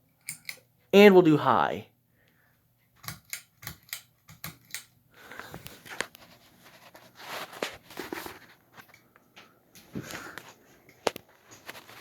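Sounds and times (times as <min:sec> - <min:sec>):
ceiling fan hissing and rustling: 0:05.1 - 0:12.0.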